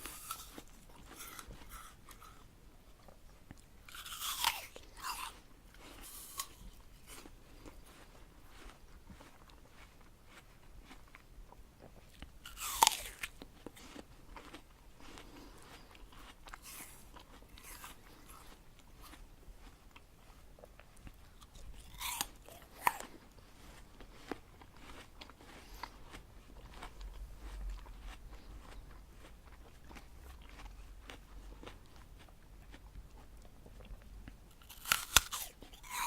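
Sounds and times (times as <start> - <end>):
loud apple crunching bites: 0.0 - 2.5, 3.8 - 7.8, 12.1 - 19.3, 21.3 - 23.2, 34.5 - 36.0
small crunching chews: 0.0 - 36.0.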